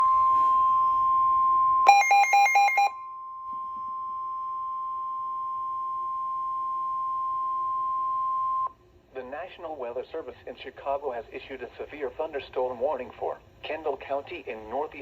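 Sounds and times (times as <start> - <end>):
quick two-pitch beeps: 1.9 - 2.9
steady alert tone: 1.9 - 2.9.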